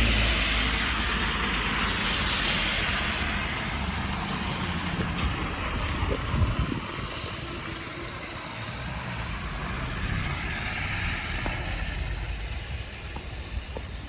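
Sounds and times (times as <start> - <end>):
wind buffeting microphone: 3.4 - 14.0.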